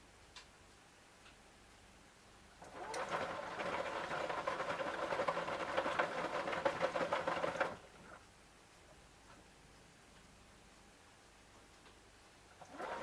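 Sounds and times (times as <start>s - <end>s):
washing machine drum motor whine: 2.6s - 8.2s, 12.6s - 13.0s.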